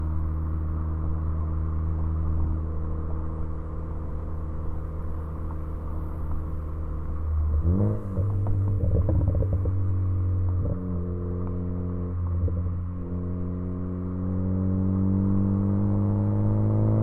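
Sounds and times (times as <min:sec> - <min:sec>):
car engine and exhaust revving: 0:00.0 - 0:17.0
sharp exhaust pops: 0:08.2 - 0:09.9.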